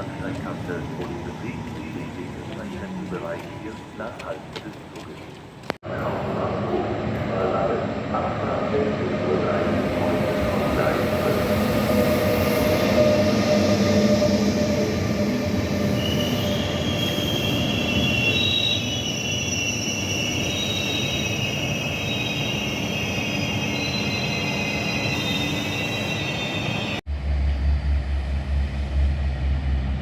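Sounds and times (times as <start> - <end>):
train rumbling: 0.0 - 5.0, 5.8 - 30.0
high metallic squeal: 11.2 - 27.0.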